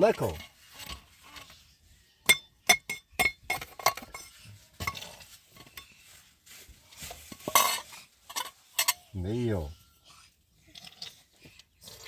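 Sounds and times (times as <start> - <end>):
objects clattering: 2.3 - 9.2.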